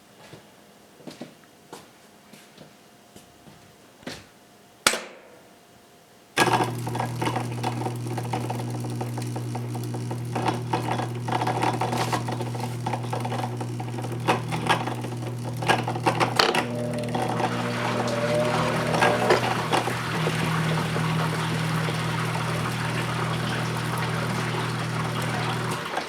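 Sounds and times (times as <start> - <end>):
washing machine motor running: 6.4 - 26.0
washing machine clicks: 6.5 - 26.0.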